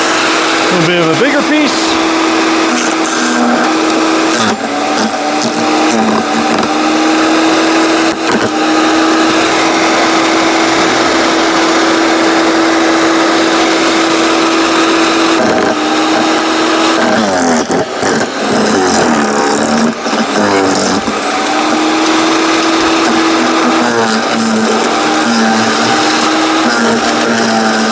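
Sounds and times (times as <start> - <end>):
branch grinding: 0.0 - 27.9
wood chipper motor whine: 0.0 - 27.9
wood cracking: 2.7 - 9.4, 15.2 - 27.9.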